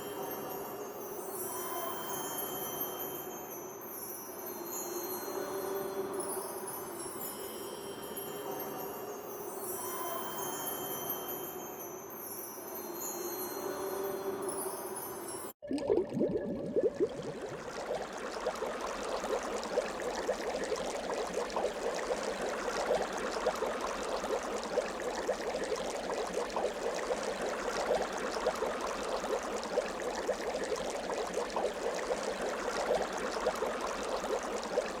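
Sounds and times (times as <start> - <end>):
running water burbling: 15.6 - 35.0.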